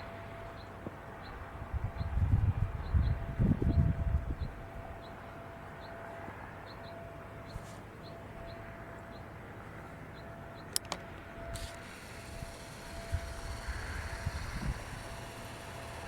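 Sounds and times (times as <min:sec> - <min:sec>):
faint steady tone: 0:00.0 - 0:16.0
sharp clicks: 0:10.7 - 0:16.0.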